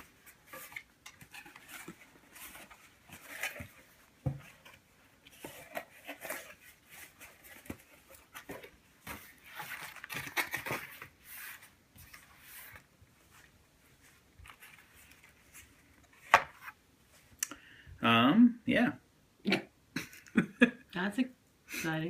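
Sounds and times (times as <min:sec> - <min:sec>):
cardboard rustling and scraping: 0:00.0 - 0:17.2.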